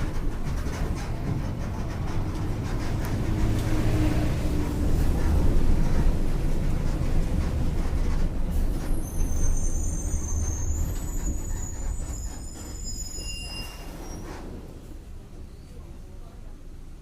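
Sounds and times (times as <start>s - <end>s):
bus diesel engine rumbling: 0.0s - 17.0s
high-pitched brake squeals: 8.8s - 14.4s.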